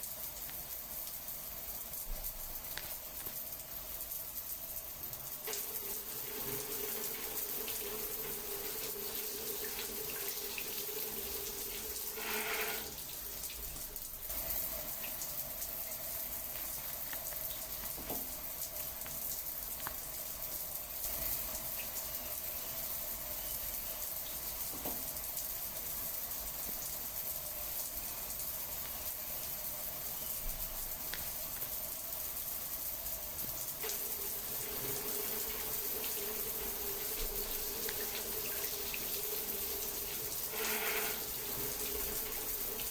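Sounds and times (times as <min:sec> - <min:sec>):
flowing water rushing: 0:12.1 - 0:13.2, 0:34.0 - 0:42.9.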